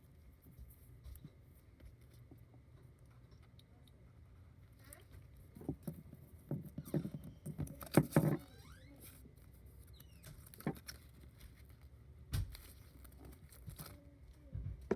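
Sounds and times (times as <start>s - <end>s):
objects rustling and scraping: 4.2s - 14.9s.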